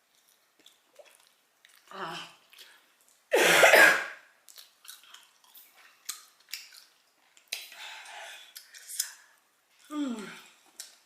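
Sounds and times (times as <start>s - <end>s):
wet chewing clicks: 0.0s - 3.3s, 4.4s - 7.8s
woman coughing harshly: 3.3s - 4.2s.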